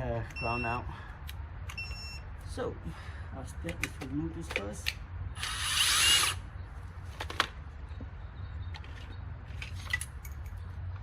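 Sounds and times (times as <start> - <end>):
power drill running: 5.4 - 6.4.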